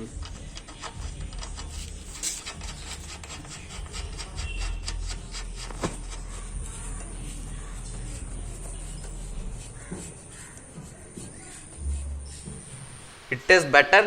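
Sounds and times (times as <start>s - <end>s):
metal parts scraping: 0.1s - 6.2s.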